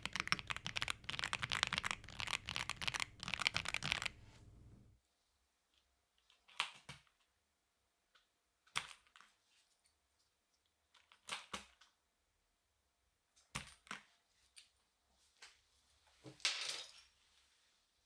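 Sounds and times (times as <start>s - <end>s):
mechanical keyboard keys clacking: 0.0s - 4.9s.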